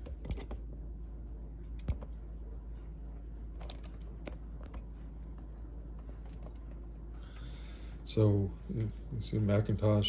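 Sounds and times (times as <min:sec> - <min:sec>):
low steady hum: 0:00.0 - 0:10.0
laptop clicks and rustling: 0:03.6 - 0:04.9.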